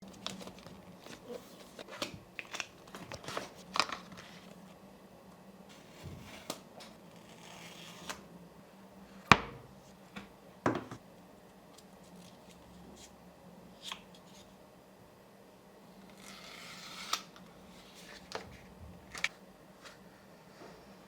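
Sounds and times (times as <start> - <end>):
paper and cardboard packaging rustling: 0.0 - 4.7.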